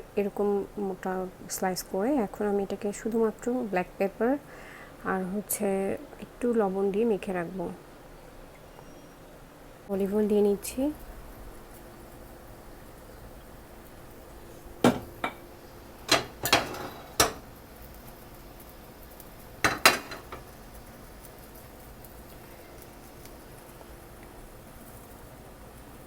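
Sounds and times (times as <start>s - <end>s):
dishes and utensils clinking: 14.8s - 17.5s, 19.6s - 20.5s.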